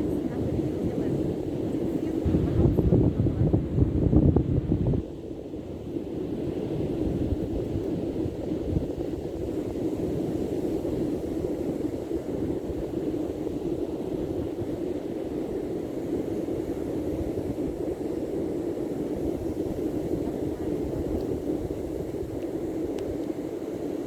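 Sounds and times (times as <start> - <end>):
seaside wind: 0.0 - 24.0
wind rumbling on microphone: 0.0 - 24.0.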